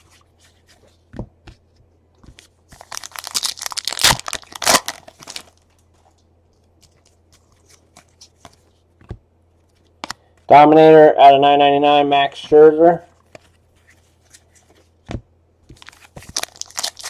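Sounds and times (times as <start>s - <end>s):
foil wrapper tearing and crinkling: 2.8s - 5.6s, 15.8s - 17.0s.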